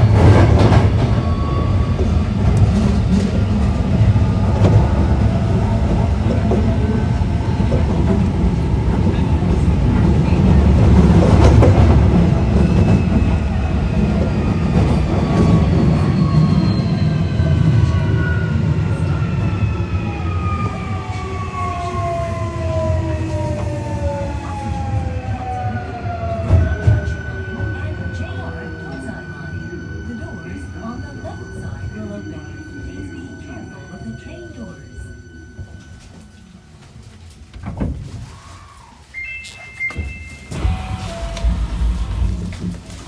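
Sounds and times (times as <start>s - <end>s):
subway train rumble and rail clatter: 0.0s - 43.0s
traction motor whine: 40.5s - 43.0s.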